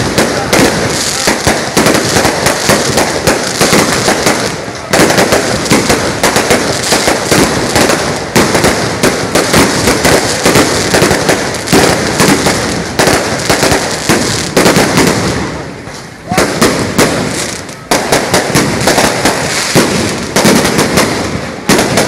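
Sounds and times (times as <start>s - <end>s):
firecrackers crackling: 0.0s - 22.0s.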